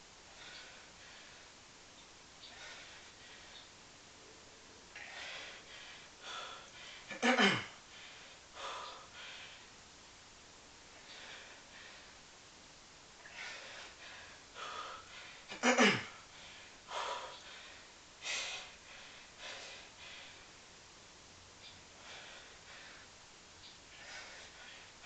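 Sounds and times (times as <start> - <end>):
man breathing hard: 0.3 - 1.6, 2.4 - 3.7, 4.9 - 9.7, 11.0 - 12.2, 13.2 - 20.6, 21.9 - 23.1, 23.9 - 25.0.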